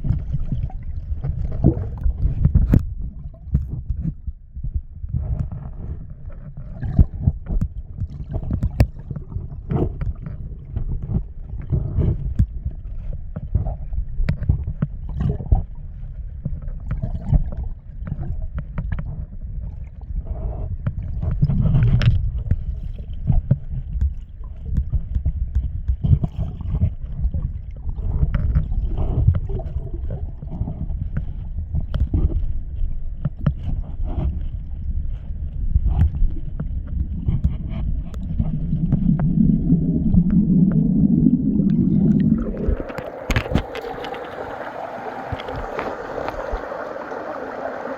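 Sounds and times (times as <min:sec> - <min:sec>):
wind buffeting microphone: 0:37.0 - 0:47.9
stream gurgling: 0:38.2 - 0:47.9.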